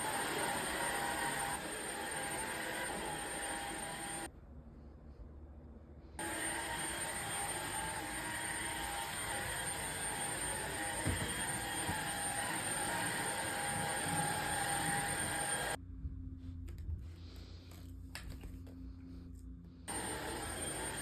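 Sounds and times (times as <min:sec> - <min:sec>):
vacuum cleaner running: 0:00.0 - 0:04.3, 0:06.2 - 0:15.8, 0:19.9 - 0:21.0.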